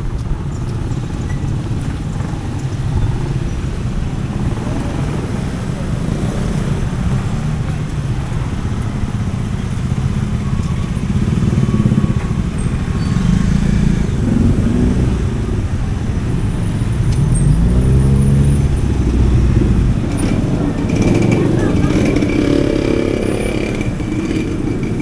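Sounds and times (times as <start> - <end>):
vehicle engines running: 0.0 - 25.0
engine speeding up: 3.4 - 25.0.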